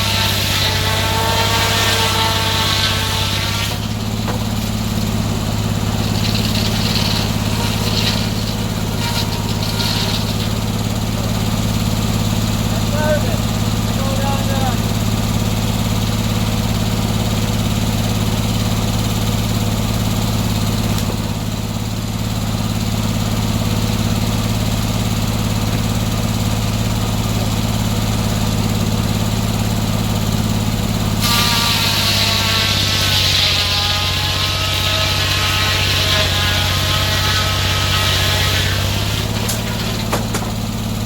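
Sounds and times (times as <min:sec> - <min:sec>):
saw blade cutting log: 0:00.0 - 0:41.0
sawmill engine running: 0:00.0 - 0:41.0.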